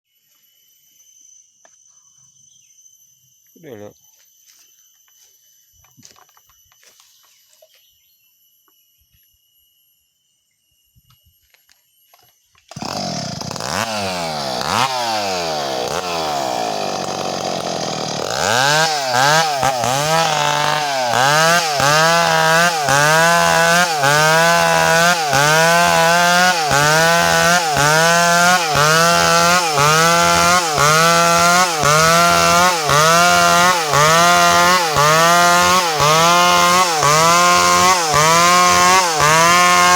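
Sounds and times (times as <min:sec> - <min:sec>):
chainsaw cutting wood: 0:12.6 - 0:39.9.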